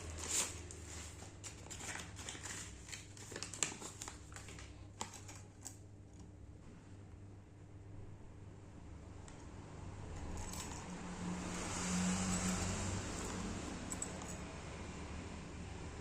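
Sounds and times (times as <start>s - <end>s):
packaging crinkling and rustling: 0.0s - 6.2s, 10.3s - 11.0s.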